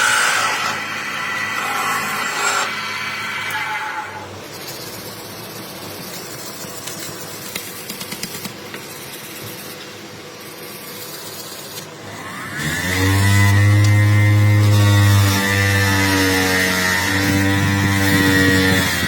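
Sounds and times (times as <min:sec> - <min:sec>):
power tool motor winding down: 0:12.1 - 0:19.0.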